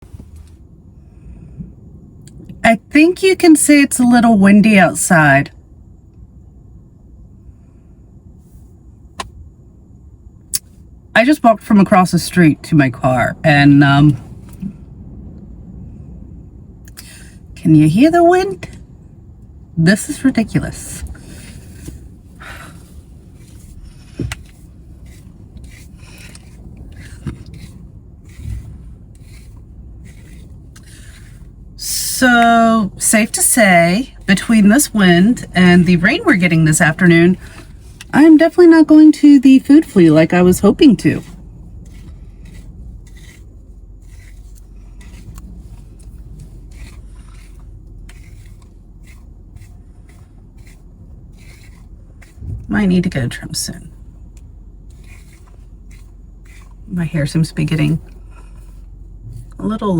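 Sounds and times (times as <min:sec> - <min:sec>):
steady low rumble: 0:00.0 - 0:59.9
strong gusty wind: 0:00.0 - 0:59.9
rustling and rubbing scrapes: 0:19.8 - 0:59.8
dull thumps: 0:23.7 - 0:24.8.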